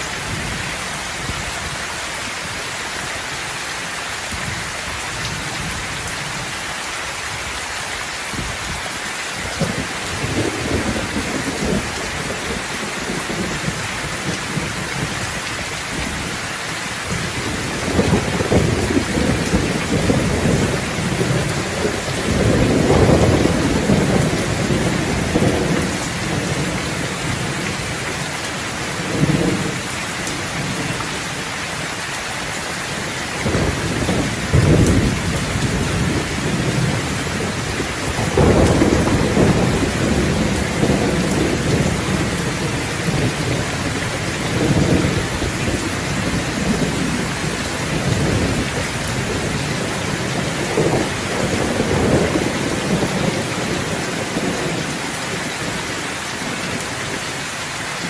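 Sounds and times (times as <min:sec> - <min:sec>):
rain hissing: 0:00.0 - 0:57.9
rolling thunder: 0:09.5 - 0:15.2, 0:17.1 - 0:28.1, 0:28.9 - 0:31.0, 0:33.4 - 0:55.0.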